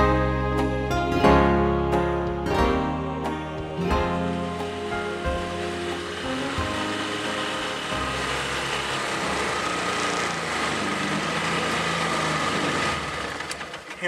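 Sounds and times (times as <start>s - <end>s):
small engine running: 4.3s - 14.0s.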